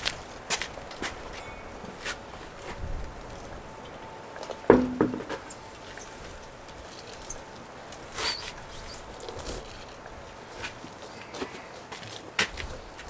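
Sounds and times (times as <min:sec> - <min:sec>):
light knocks: 0:04.4 - 0:05.6.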